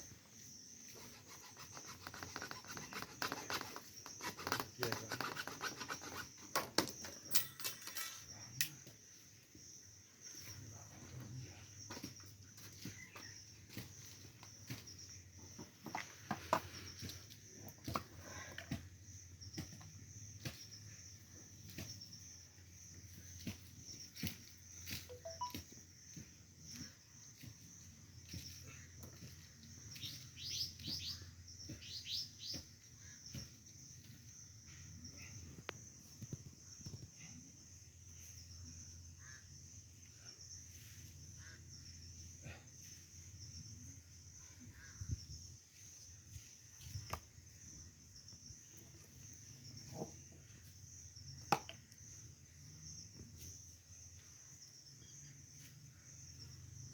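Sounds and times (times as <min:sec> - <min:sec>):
faint bird chirps: 0:08.2 - 0:18.4, 0:19.2 - 0:51.5
high-pitched insect chirring: 0:24.8 - 0:26.2.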